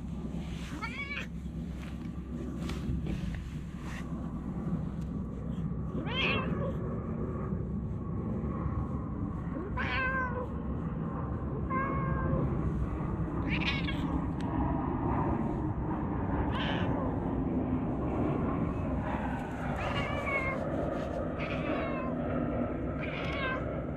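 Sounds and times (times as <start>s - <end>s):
low background rumble: 0.0s - 23.9s
cat meowing: 0.7s - 1.3s, 6.0s - 6.8s, 9.7s - 10.4s, 11.7s - 12.5s, 13.4s - 14.2s, 16.5s - 17.1s, 19.8s - 20.6s, 21.4s - 22.2s, 23.0s - 23.7s.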